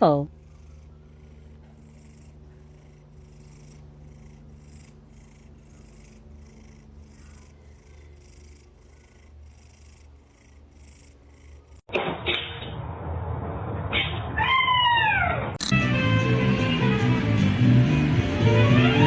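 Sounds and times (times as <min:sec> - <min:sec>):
cat purring: 0:00.0 - 0:11.9.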